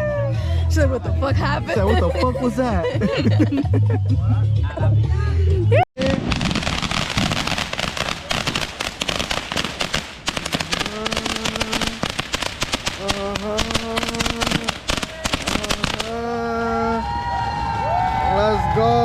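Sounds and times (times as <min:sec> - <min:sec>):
fireworks crackling: 0:06.0 - 0:16.3.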